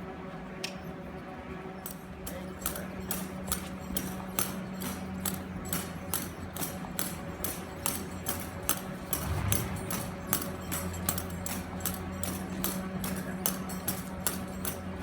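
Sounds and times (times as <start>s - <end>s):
held low tone: 9.2s - 10.8s.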